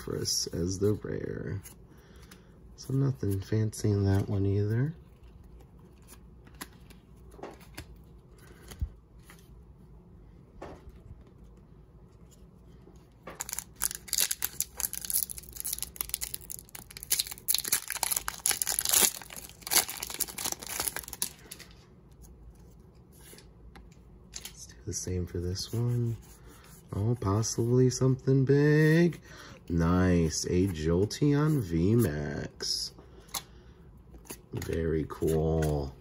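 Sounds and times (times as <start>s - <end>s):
foil wrapper tearing and crinkling: 13.4s - 21.6s.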